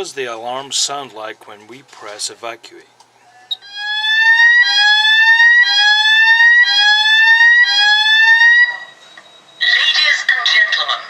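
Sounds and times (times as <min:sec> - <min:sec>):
fire alarm rising sweep tone: 0:03.6 - 0:09.6.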